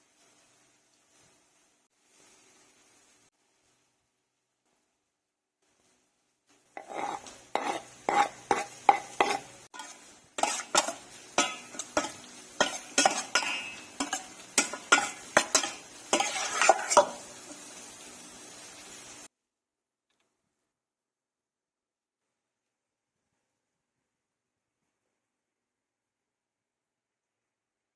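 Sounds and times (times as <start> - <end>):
spoon scraping against a bowl: 6.8 - 17.5.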